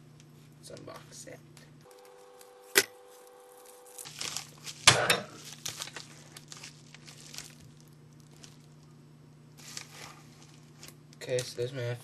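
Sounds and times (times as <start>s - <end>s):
packaging rustling and crinkling: 3.1s - 11.4s.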